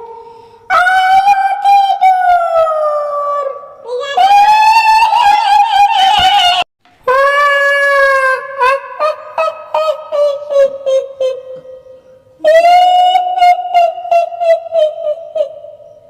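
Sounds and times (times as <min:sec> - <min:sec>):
woman's ghostly wail: 0:04.1 - 0:11.4
cackling pulses: 0:07.1 - 0:12.3.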